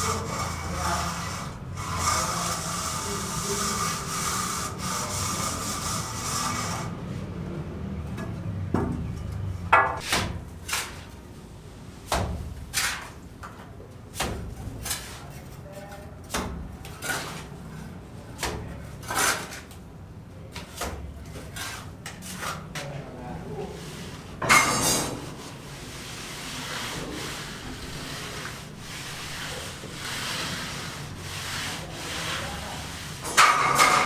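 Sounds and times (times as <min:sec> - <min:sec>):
short scraping strokes: 0:00.0 - 0:07.0, 0:23.7 - 0:34.0
scraping on wood: 0:00.0 - 0:07.3, 0:23.6 - 0:34.0.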